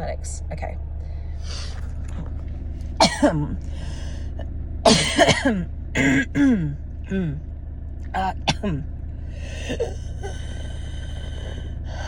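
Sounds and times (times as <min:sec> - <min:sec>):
low hum: 0:00.0 - 0:12.0
woman coughing: 0:03.0 - 0:03.6, 0:04.9 - 0:07.4, 0:08.2 - 0:08.9
wheezing breath: 0:09.3 - 0:12.0.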